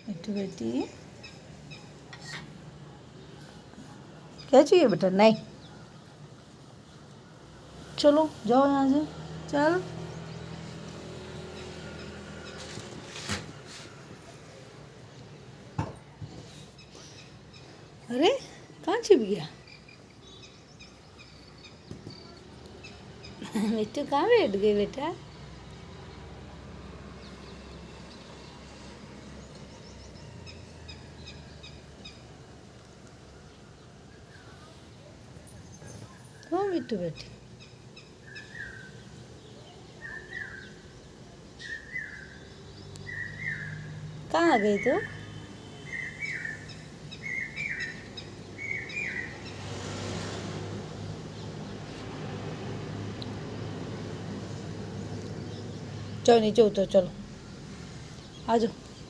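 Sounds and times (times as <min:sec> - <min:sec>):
bird chirping: 0:33.4 - 0:49.8.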